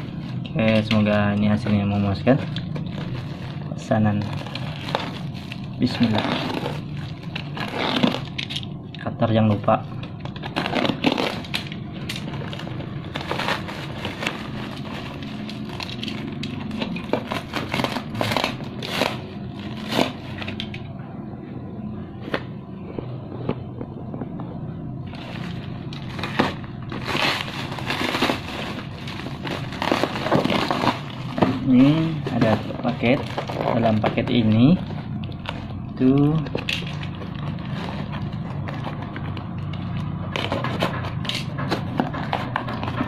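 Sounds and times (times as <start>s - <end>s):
plastic packaging crinkling: 0.0s - 8.7s, 9.7s - 20.8s, 25.0s - 43.0s
steady low hum: 0.0s - 43.0s.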